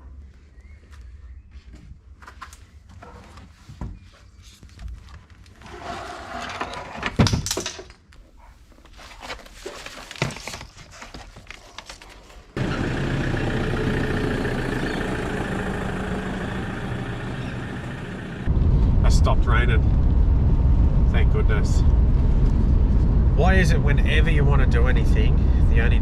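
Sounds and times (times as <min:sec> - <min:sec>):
vehicle running noise inside cabin: 0:12.6 - 0:23.5.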